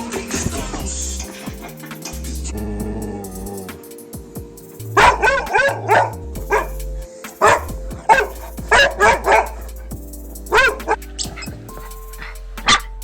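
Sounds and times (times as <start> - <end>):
background music: 0.0 - 13.0
dog barking: 5.0 - 6.8, 7.4 - 9.7, 10.5 - 11.4.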